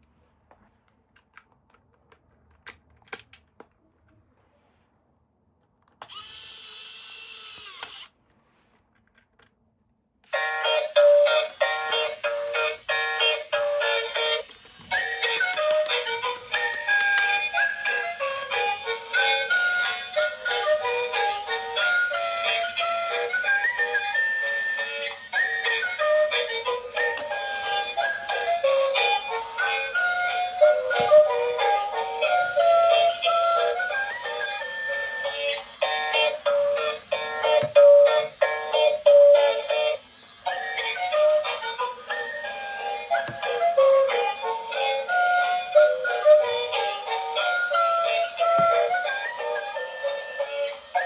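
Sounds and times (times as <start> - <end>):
tinny synthesized toy tune: 10.3 - 51.0.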